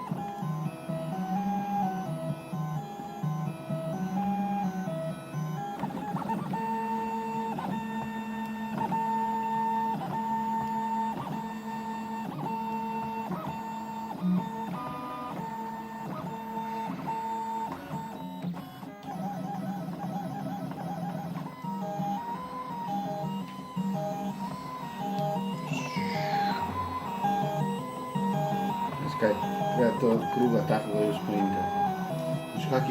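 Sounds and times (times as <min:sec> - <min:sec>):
stepper motors whining: 0:23.8 - 0:32.9.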